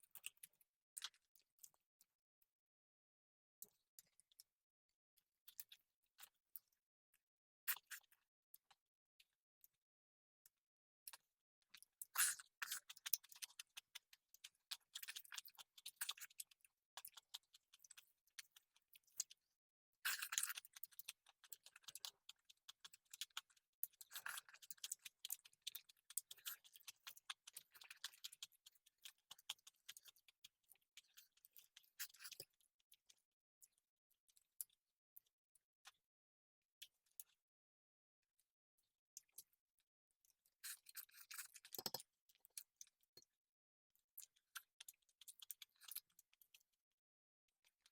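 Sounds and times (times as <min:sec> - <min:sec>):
wet chewing and crunching: 0:07.7 - 0:08.8, 0:11.1 - 0:19.4, 0:20.0 - 0:34.8, 0:40.2 - 0:43.3, 0:44.1 - 0:46.8.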